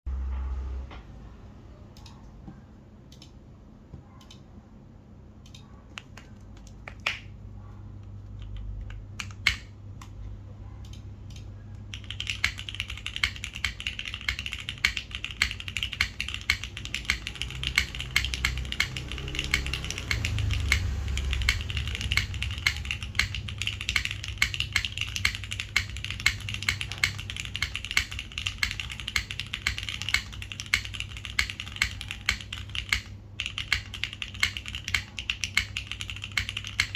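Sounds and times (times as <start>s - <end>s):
mechanical keyboard typing: 8.0s - 10.2s, 10.8s - 36.9s.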